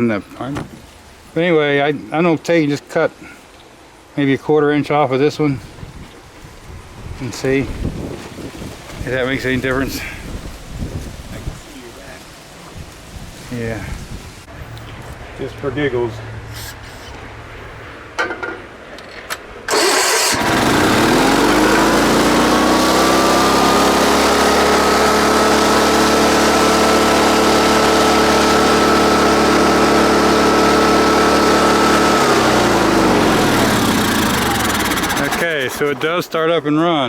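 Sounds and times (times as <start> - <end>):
tractor engine starting and running: 19.7 - 36.6.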